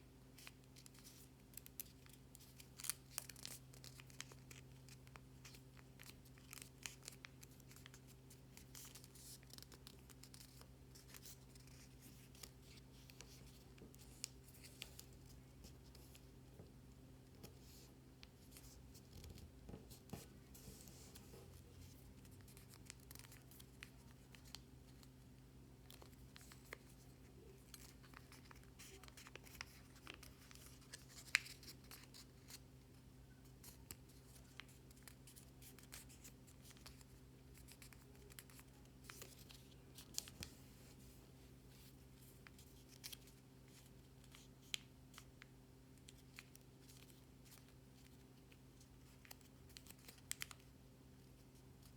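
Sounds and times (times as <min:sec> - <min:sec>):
low electrical hum: 0:00.0 - 0:51.9
paper being folded and creased: 0:00.4 - 0:15.3, 0:25.9 - 0:32.6.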